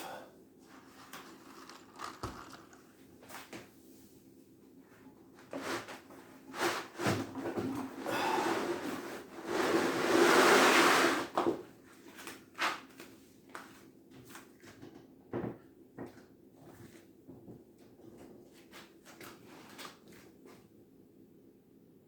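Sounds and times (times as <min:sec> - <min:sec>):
objects scraping across the floor: 0:00.6 - 0:03.6, 0:05.5 - 0:11.6.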